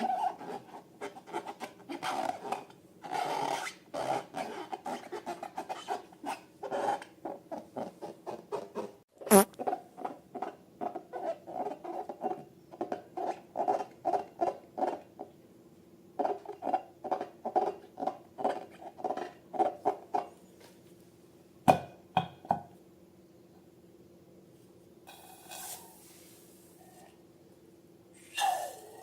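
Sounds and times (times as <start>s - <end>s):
balloon and slime squishing: 9.3s - 9.6s.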